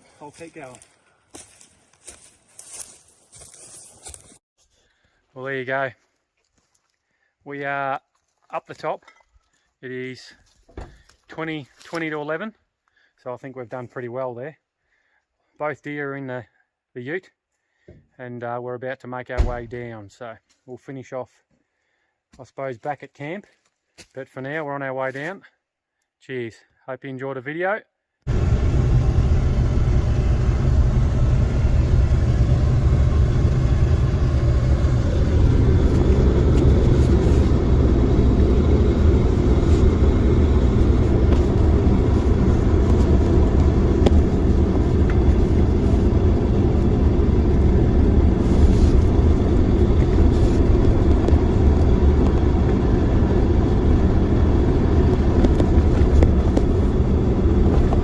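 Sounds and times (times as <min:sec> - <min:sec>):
pickup truck engine rumble: 0:28.3 - 0:58.0
road noise: 0:28.3 - 0:58.0.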